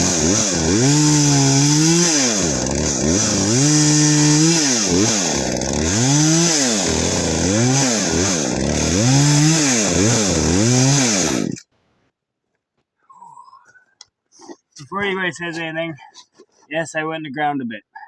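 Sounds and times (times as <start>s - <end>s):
chainsaw cutting wood: 0.0s - 11.6s.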